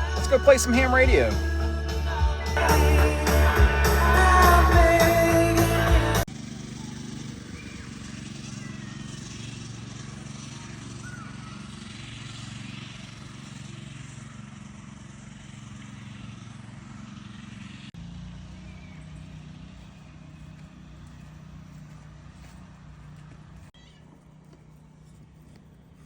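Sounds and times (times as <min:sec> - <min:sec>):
car engine and tyre hum: 0:07.6 - 0:26.0.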